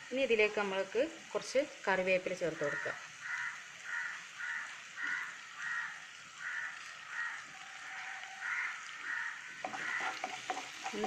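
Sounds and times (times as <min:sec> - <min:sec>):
leaves frying in hot oil: 0:00.0 - 0:11.0
bird harsh calls: 0:03.2 - 0:10.6.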